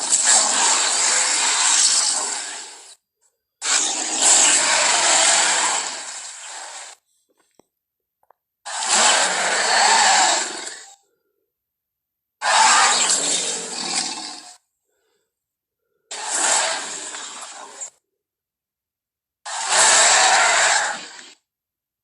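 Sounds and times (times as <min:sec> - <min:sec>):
harsh raspy creature roars: 0:00.0 - 0:02.9, 0:03.6 - 0:07.0, 0:08.7 - 0:11.0, 0:12.4 - 0:14.6, 0:16.1 - 0:18.0, 0:19.5 - 0:21.4.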